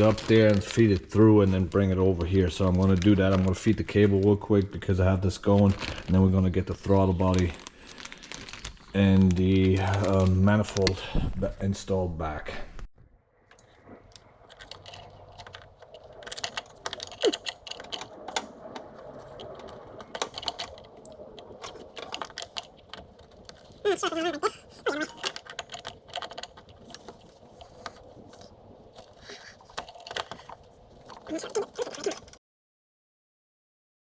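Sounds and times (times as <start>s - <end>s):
small metal parts clattering: 13.6s - 32.4s.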